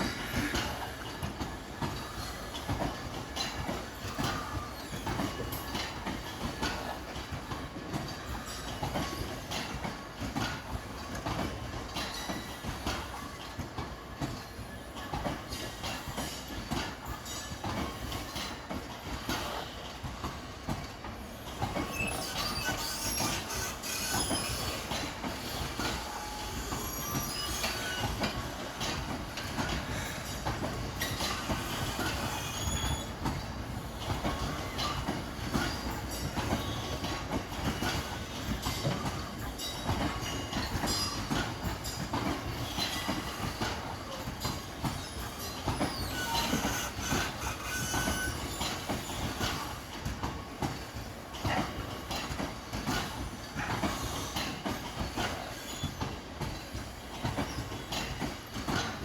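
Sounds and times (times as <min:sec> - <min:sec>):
train wagons rolling past: 0:00.0 - 0:59.0
wheels clicking over rail joints: 0:00.0 - 0:59.0
high wheel squeals: 0:21.3 - 0:33.4, 0:42.5 - 0:49.8.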